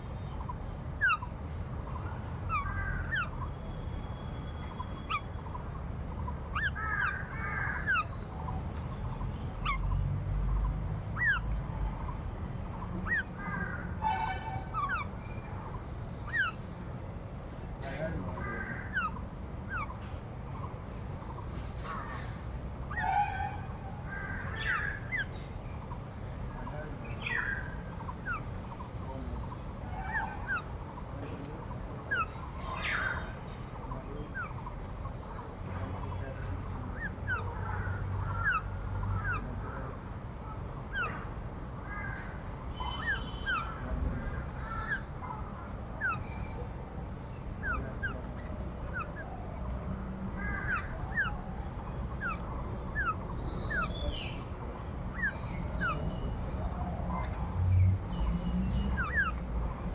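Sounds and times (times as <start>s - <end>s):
steady high hiss: 0.0s - 37.5s
birds calling: 0.0s - 59.9s
crow caws: 2.5s - 3.6s, 6.6s - 8.2s, 13.0s - 15.3s, 17.8s - 19.9s, 21.8s - 25.3s, 32.1s - 33.4s, 37.0s - 39.9s, 40.9s - 46.4s, 50.4s - 51.5s, 59.0s - 59.4s.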